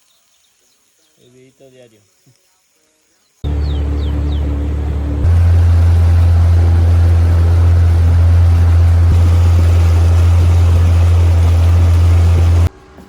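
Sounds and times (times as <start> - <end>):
outboard motor running: 3.5 - 12.7
rushing water noise: 5.2 - 12.7.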